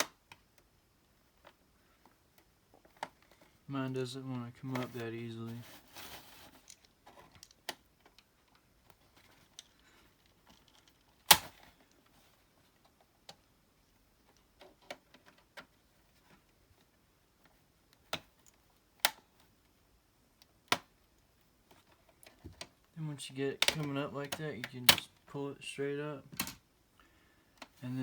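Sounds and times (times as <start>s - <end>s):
plastic clicks and snaps: 6.7s - 12.1s, 23.6s - 25.3s.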